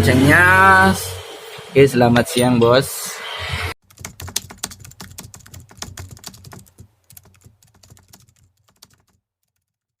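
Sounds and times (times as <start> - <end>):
small rapid clicks and taps: 3.9 - 9.9.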